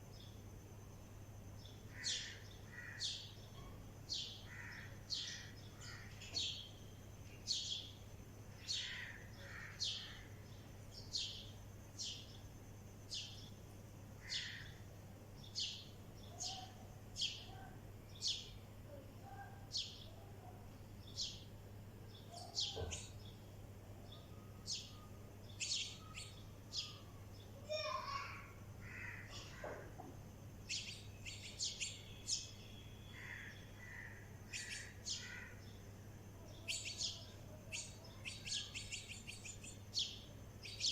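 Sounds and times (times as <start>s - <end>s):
sparrow chirping: 1.5s - 8.0s, 8.6s - 12.4s, 13.0s - 13.6s, 15.4s - 18.6s, 19.3s - 20.1s, 21.0s - 21.5s, 22.1s - 23.5s, 24.1s - 27.8s, 30.6s - 35.8s, 36.4s - 40.9s
soft low bird calls: 15.5s - 21.5s, 24.0s - 29.9s.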